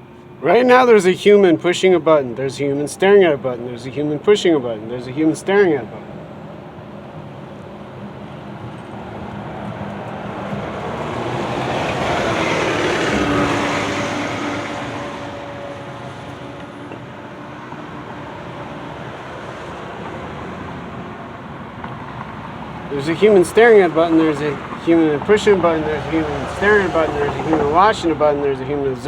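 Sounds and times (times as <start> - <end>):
vehicle passing by: 8.0 - 29.0.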